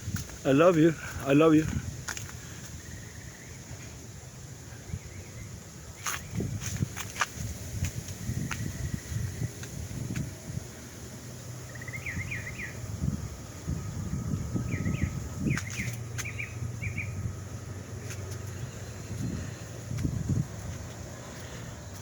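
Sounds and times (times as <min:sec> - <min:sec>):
low rumbling: 0:00.0 - 0:22.0
steady low hum: 0:00.0 - 0:22.0
small bird chirping: 0:11.6 - 0:13.2, 0:14.4 - 0:21.7.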